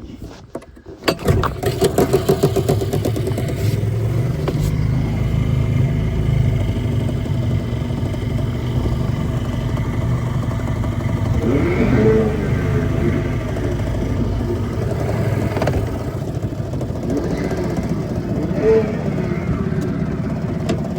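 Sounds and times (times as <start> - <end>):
second engine rising and falling: 1.1 - 20.9
small boat motor droning: 1.2 - 20.9.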